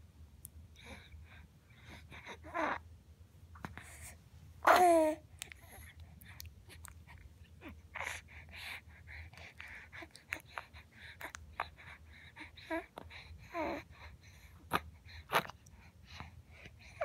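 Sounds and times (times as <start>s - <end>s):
baby grunting: 4.6s - 5.2s.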